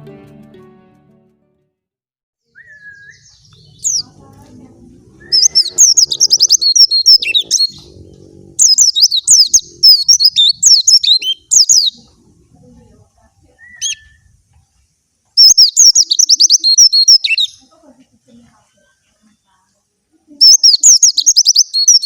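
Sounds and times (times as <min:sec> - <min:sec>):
bird singing high sliding chirps: 0:02.5 - 0:04.2, 0:05.1 - 0:12.2, 0:13.6 - 0:14.3, 0:15.4 - 0:17.6, 0:20.4 - 0:22.0.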